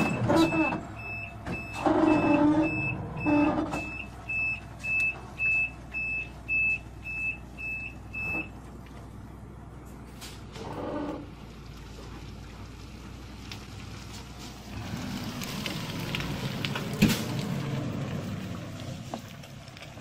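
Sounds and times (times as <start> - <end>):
reversing alarm beeping: 0.0 - 8.6.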